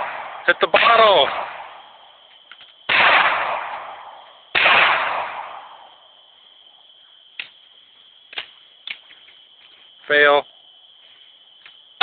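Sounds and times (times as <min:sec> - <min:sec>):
pistol shots: 0:00.0 - 0:01.9, 0:02.9 - 0:05.9.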